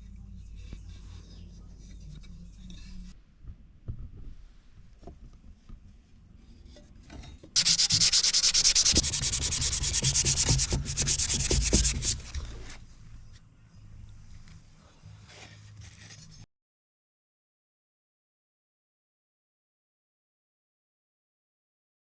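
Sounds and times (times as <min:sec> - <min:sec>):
sanding metal blade rasping: 0:07.6 - 0:12.7.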